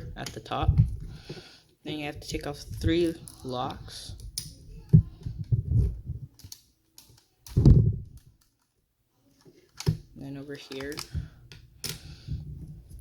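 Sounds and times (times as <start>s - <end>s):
plastic pieces clicking: 6.3s - 8.7s, 10.6s - 12.1s.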